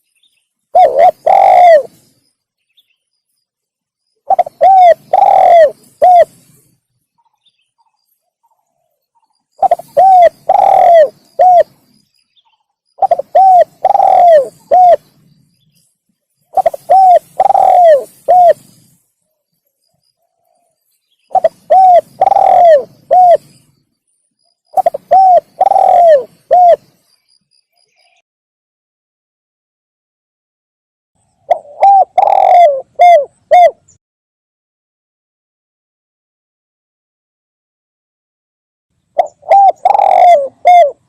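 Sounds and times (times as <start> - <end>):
dove cooing: 0.8 - 2.1, 4.3 - 6.6, 9.6 - 12.0, 13.0 - 15.2, 16.5 - 19.0, 21.3 - 23.7, 24.7 - 27.0, 31.5 - 34.0, 39.2 - 41.0.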